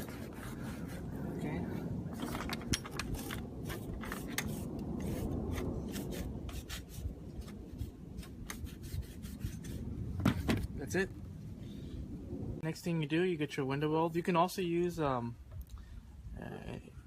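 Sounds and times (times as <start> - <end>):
rag rubbing and wiping: 0.0 - 1.2.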